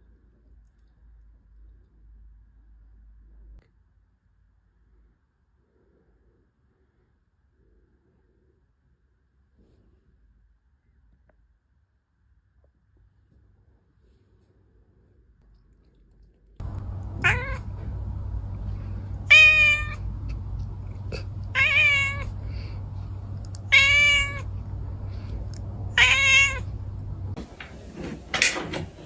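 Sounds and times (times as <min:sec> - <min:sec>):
cat meowing: 0:16.6 - 0:27.4
steady low hum: 0:16.6 - 0:29.0.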